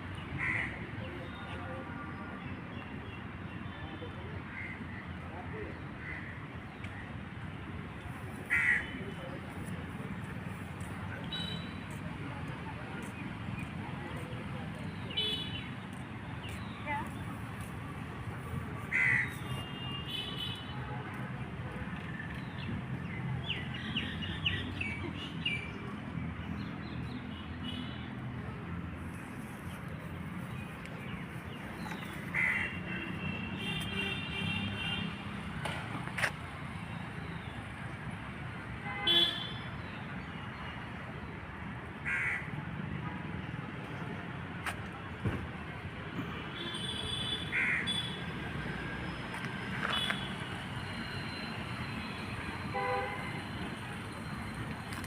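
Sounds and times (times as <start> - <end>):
vehicle horns honking: 38.8 - 39.6, 52.7 - 53.4.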